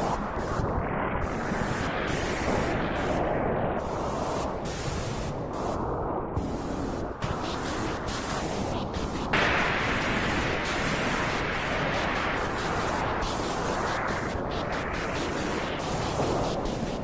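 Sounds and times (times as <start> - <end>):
white noise hiss: 6.4 - 17.0.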